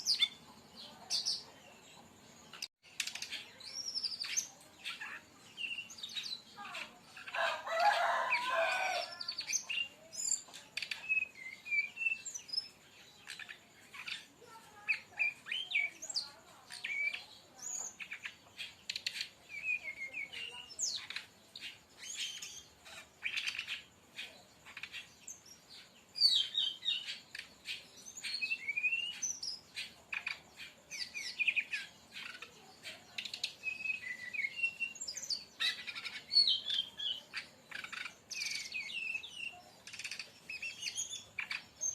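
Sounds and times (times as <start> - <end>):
bird singing chirps and whistles: 9.4 - 14.3, 14.9 - 25.5, 26.2 - 41.9.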